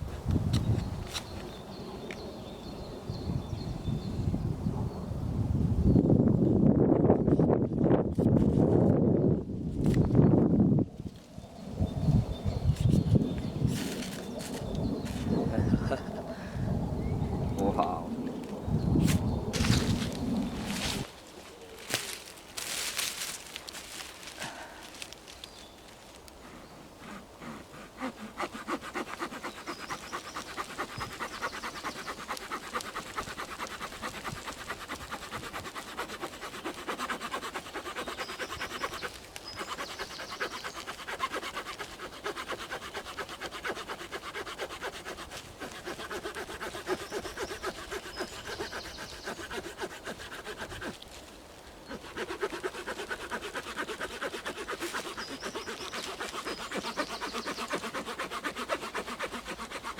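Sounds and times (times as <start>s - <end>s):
saw blade cutting wooden log: 27.0s - 51.0s, 51.9s - 59.9s.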